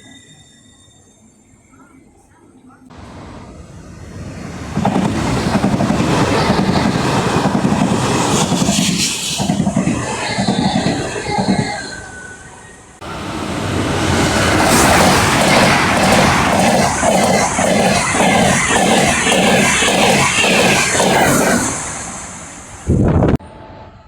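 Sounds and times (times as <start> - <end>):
train rumbling rattle: 2.7 - 12.1, 12.9 - 23.6
falling whine: 8.3 - 24.0.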